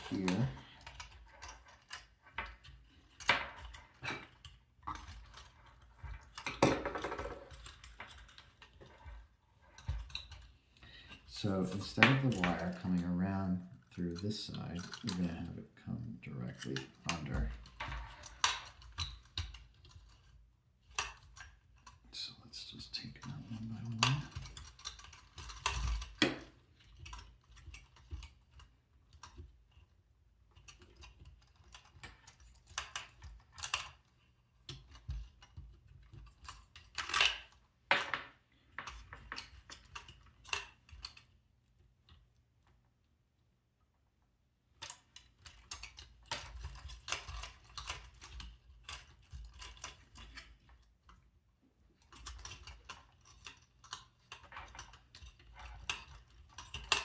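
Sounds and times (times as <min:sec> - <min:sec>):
plastic and metal parts clattering: 0:00.0 - 0:10.4.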